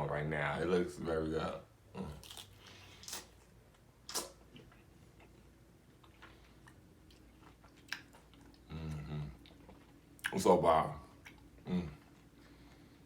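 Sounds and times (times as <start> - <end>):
chewing cheesecake: 2.0 - 10.3, 11.1 - 13.0.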